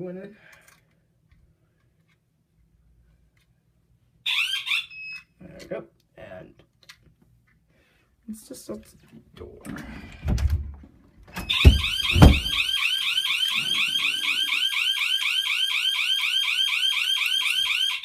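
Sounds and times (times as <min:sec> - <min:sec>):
alarm siren warbling: 0:04.3 - 0:05.0, 0:11.4 - 0:18.0
low door thumps: 0:11.4 - 0:12.6.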